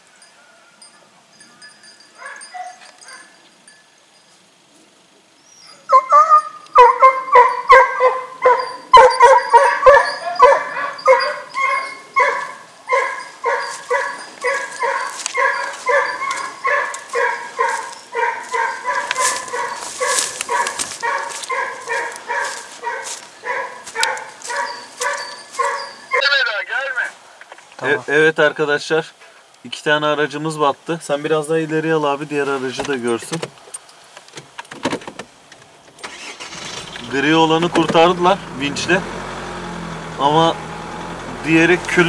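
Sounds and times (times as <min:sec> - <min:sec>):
hunting hounds baying: 0:00.4 - 0:03.6, 0:05.4 - 0:27.1, 0:36.0 - 0:42.0.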